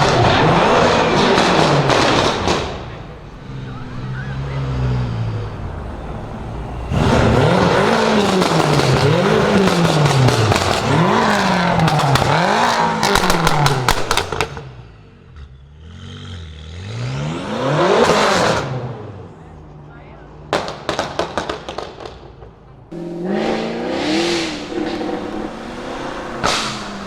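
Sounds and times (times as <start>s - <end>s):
exhaust crackles: 0.0s - 15.4s, 22.7s - 27.0s
car engine revving: 0.0s - 19.3s, 22.9s - 27.0s.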